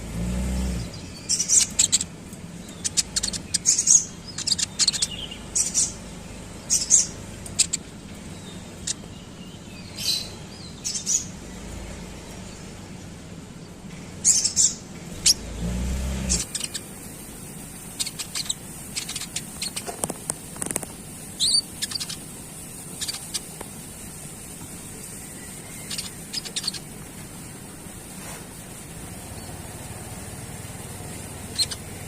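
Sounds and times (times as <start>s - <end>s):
bird chirping: 0.5s - 12.7s, 13.6s - 27.6s, 28.7s - 32.0s.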